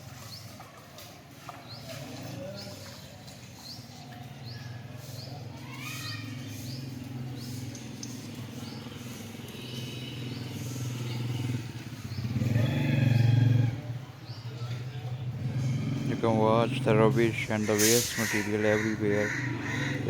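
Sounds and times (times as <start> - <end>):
vehicle engine running: 6.3 - 17.6.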